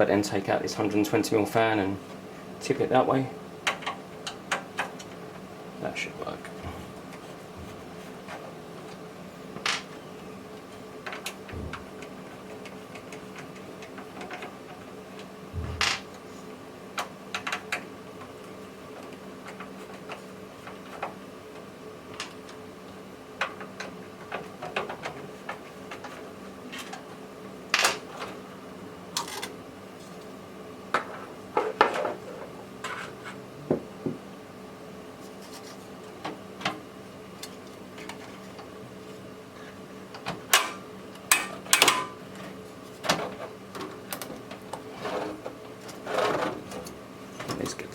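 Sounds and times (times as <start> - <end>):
loud knocks: 15.6 - 16.0.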